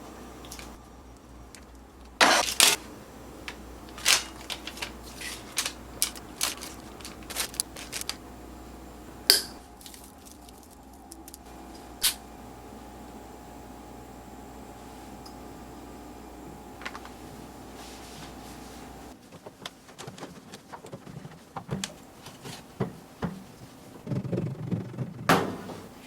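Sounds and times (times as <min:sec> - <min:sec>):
microwave oven humming: 0:00.0 - 0:19.2, 0:22.8 - 0:26.0
crinkling clicks: 0:00.4 - 0:08.2, 0:09.8 - 0:12.2.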